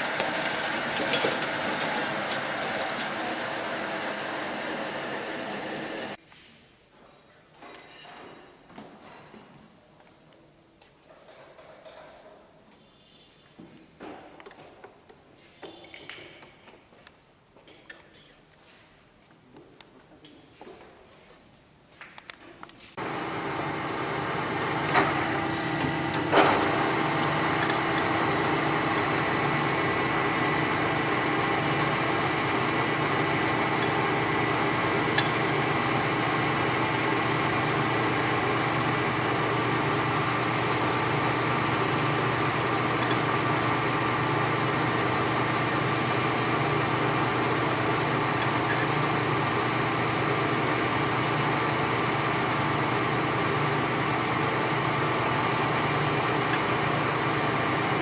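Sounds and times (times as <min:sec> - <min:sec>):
machine humming and whining: 0:00.0 - 0:06.2, 0:23.0 - 0:58.0.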